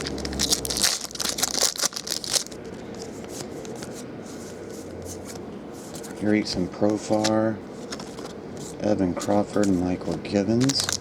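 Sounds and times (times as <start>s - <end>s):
cards rustling and snapping: 0.0s - 11.0s
faint steady hum: 0.0s - 11.0s.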